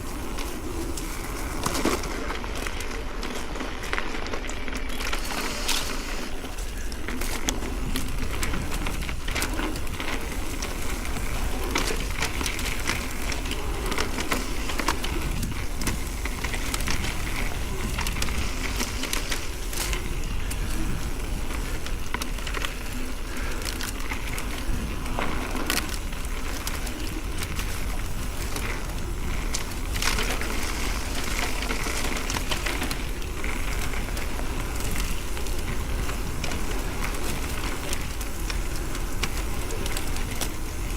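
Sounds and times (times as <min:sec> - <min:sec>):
bike clicks and rattles: 0:00.0 - 0:40.9
tyres crunching over gravel: 0:00.0 - 0:40.9.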